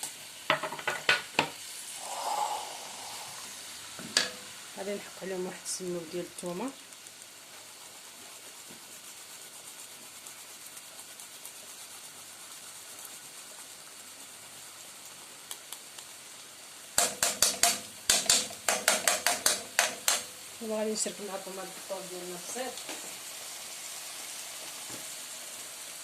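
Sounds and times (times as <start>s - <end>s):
onion sizzling in frying pan: 0.0s - 26.0s
utensil scraping metal pan: 17.0s - 20.4s.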